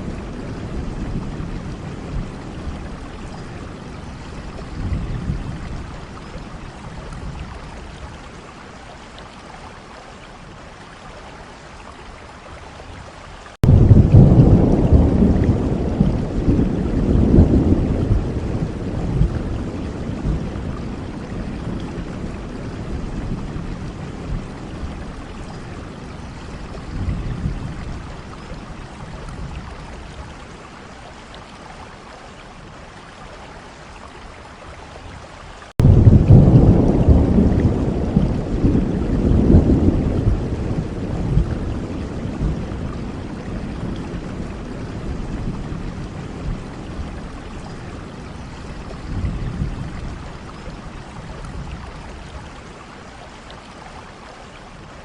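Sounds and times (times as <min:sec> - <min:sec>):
heavy rain: 0:00.0 - 0:55.0
rolling thunder: 0:13.6 - 0:26.0, 0:35.8 - 0:48.2.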